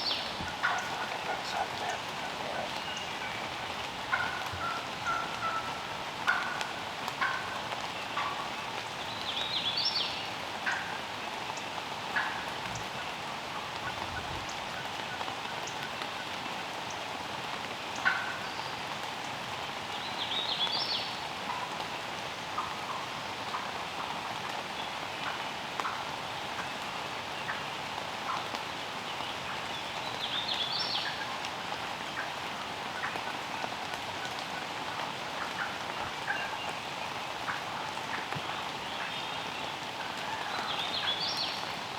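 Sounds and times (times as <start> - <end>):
steady rain: 0.0 - 41.9
turkey gobbling: 0.2 - 8.5, 12.2 - 12.5, 18.0 - 18.4, 22.6 - 23.8, 25.2 - 26.0, 31.0 - 31.4, 33.0 - 33.4, 34.2 - 36.7, 37.5 - 39.2, 40.0 - 41.6.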